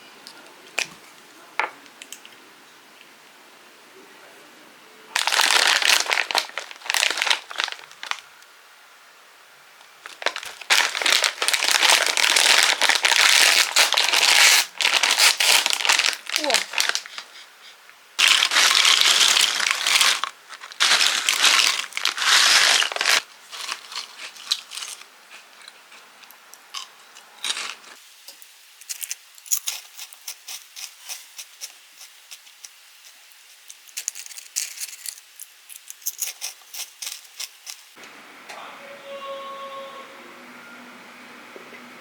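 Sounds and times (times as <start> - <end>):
packaging crinkling and tearing: 5.1 - 8.3, 9.9 - 17.5, 18.2 - 26.1, 27.4 - 28.0, 28.8 - 38.0.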